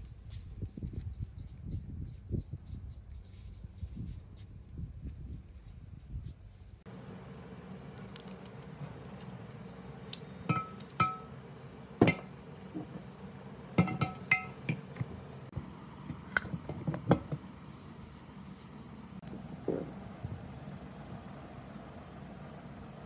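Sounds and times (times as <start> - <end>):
steady low hum: 0.0 - 23.0
metal parts clinking: 7.9 - 11.3.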